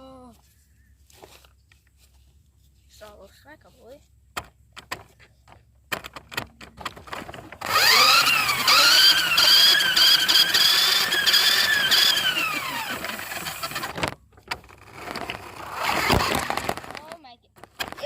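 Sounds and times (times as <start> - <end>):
toy car electric motor whining: 7.6 - 18.0.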